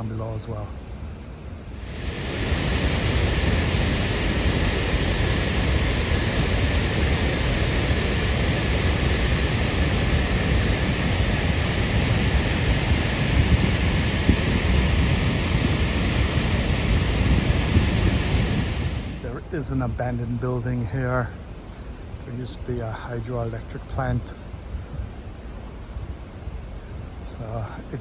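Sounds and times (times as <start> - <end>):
waterfall rushing: 1.8 - 19.2.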